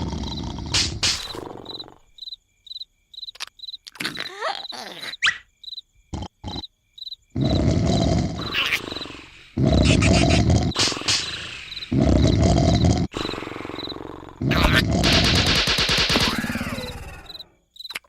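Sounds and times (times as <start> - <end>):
cartoon snoring: 0.0 - 2.1, 6.1 - 6.7, 7.4 - 15.4
crickets chirping: 0.0 - 18.0
squeaky cartoon noises: 3.9 - 5.5, 8.4 - 9.0, 14.5 - 14.9.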